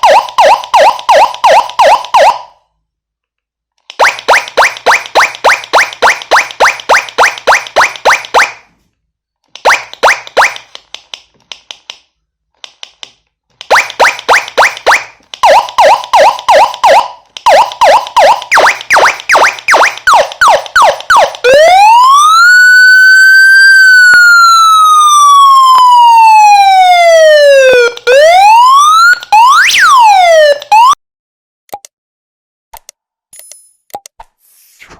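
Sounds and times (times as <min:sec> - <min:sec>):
electronic police siren: 0:00.0 - 0:02.6, 0:13.7 - 0:31.0.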